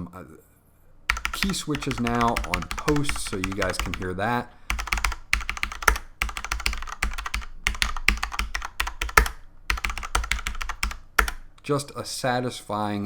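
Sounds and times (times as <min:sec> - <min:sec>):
mechanical keyboard typing: 0:01.1 - 0:04.1, 0:04.7 - 0:11.5.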